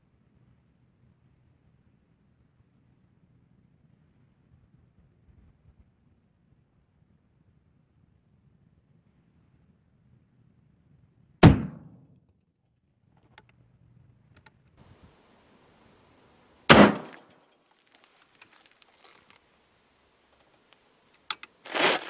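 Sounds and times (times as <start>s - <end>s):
rifle shots: 11.4s - 11.9s, 16.7s - 17.3s
faint clicks: 12.3s - 14.8s.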